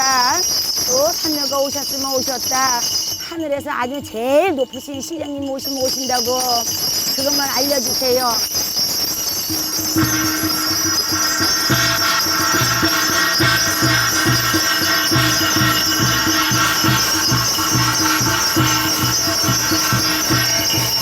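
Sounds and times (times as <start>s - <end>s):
drum beating steadily: 0.0s - 21.0s
jingling bells: 0.0s - 21.0s
ringing cymbals: 0.0s - 21.0s.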